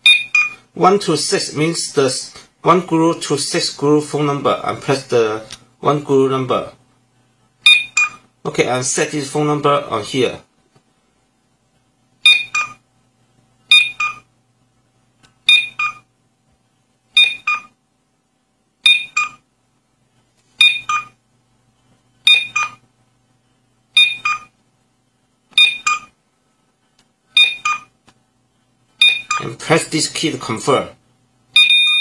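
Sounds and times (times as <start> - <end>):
keypad double beeps: 0.0 - 0.6, 7.7 - 8.2, 12.2 - 12.8, 13.7 - 14.3, 15.4 - 16.1, 17.2 - 17.8, 18.8 - 19.4, 20.6 - 21.2, 22.2 - 22.8, 24.0 - 24.5, 25.6 - 26.1, 27.4 - 27.9, 29.0 - 29.5, 31.6 - 32.0.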